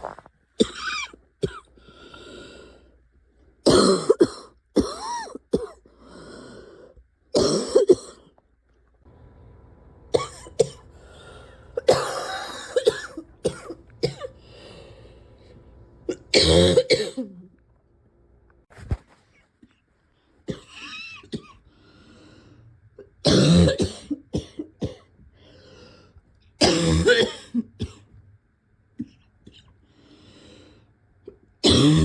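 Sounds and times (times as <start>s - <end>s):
person coughing: 0.6s - 1.7s, 3.6s - 5.8s, 7.4s - 8.3s, 10.2s - 10.9s, 11.8s - 14.4s, 16.1s - 17.5s, 20.5s - 21.6s, 23.2s - 25.1s, 26.6s - 28.1s, 31.6s - 32.0s
person breathing: 1.7s - 3.0s, 5.9s - 7.0s, 10.9s - 11.8s, 14.4s - 15.7s, 21.6s - 22.8s, 25.3s - 26.2s, 29.8s - 31.0s.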